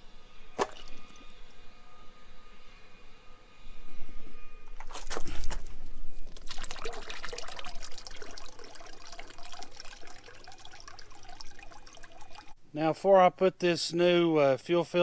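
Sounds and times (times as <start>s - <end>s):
fuel trickling and splashing: 0.5s - 1.6s, 4.8s - 12.6s.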